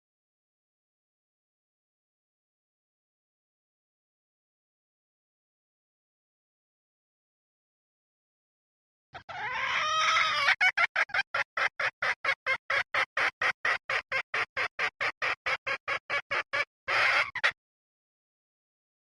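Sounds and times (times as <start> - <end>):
hen cackle: 9.2 - 17.6
hen clucking: 9.2 - 17.6.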